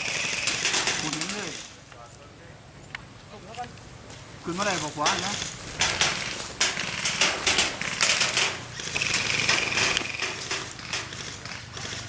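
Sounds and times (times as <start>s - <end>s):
toy guns firing sharp shots: 0.0s - 1.7s, 4.5s - 12.0s.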